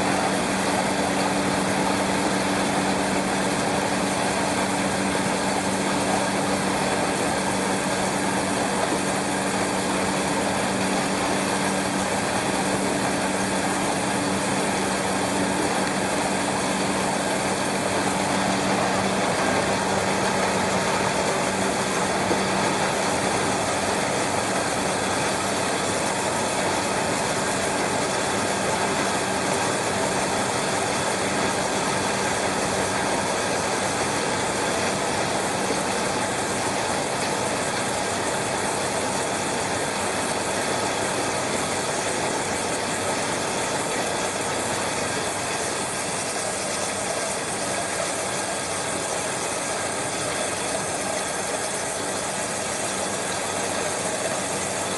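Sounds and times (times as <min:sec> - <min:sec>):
machine whirring and humming: 0:00.0 - 0:54.9.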